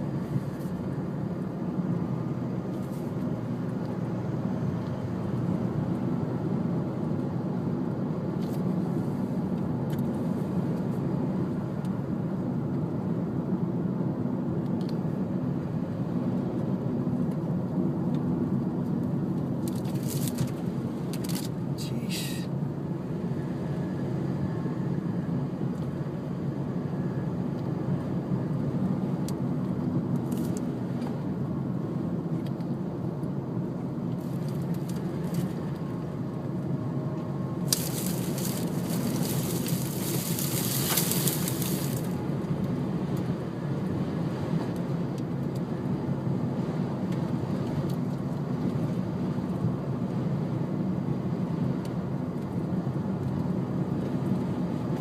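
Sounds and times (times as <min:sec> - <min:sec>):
vehicle engine rumble: 0:00.0 - 0:55.0.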